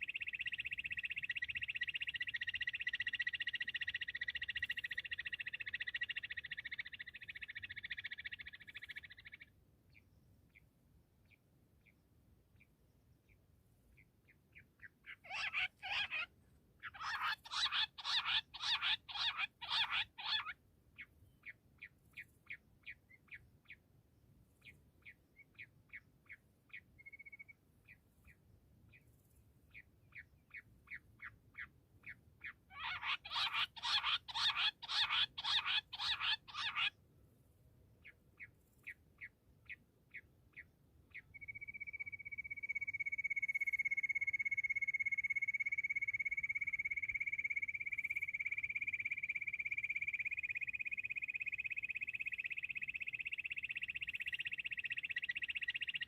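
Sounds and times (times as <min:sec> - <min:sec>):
quail calling: 0:14.8 - 0:20.6, 0:32.4 - 0:37.0.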